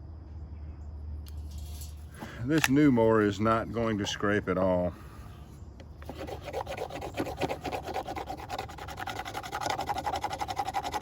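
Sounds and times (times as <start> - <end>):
knife spine rubbing on wood: 6.0 - 11.0.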